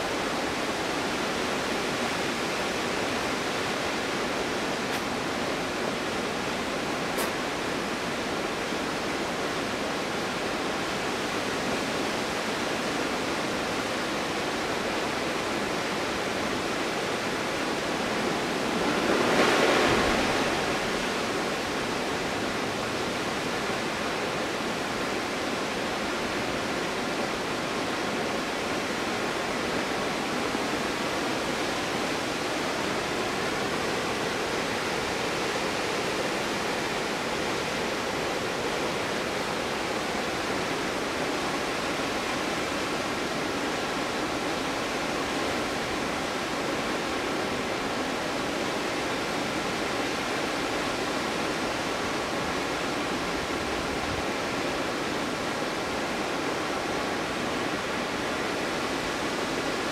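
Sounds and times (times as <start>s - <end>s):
waterfall rushing: 0.0s - 59.9s.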